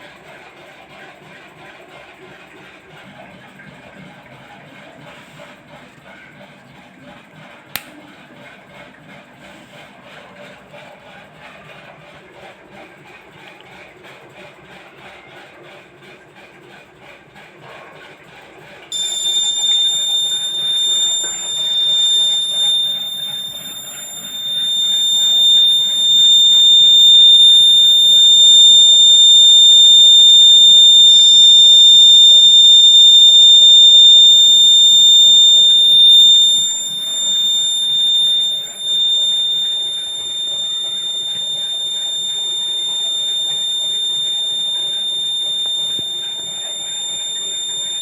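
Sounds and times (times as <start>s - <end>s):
high-pitched buzzer alarm beep: 19.0s - 48.0s.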